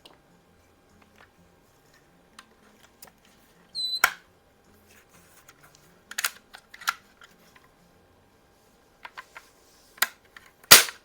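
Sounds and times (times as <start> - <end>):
air rifle pump squeak: 3.8 - 4.1
air rifle action clicks: 6.1 - 7.0, 10.7 - 11.0.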